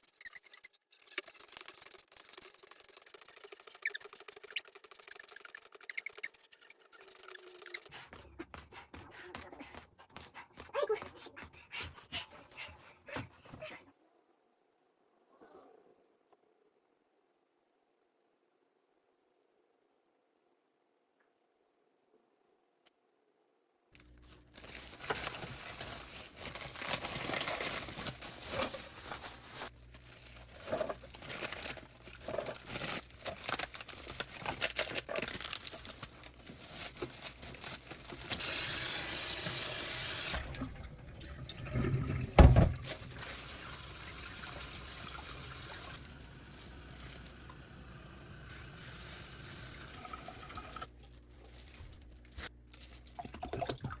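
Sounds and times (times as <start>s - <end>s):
water splashing in sink: 38.1s - 47.6s, 53.2s - 54.0s.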